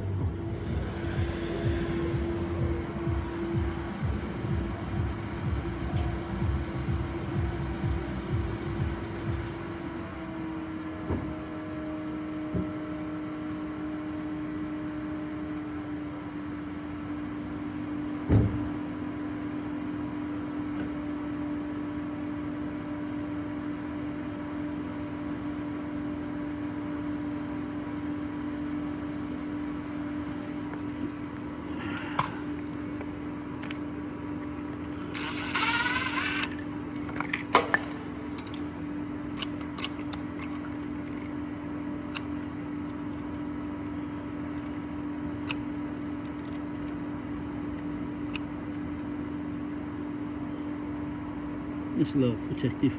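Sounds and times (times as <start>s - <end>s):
steady mechanical hum: 0.0s - 52.9s
short scrapes and squeaks: 35.0s - 36.6s.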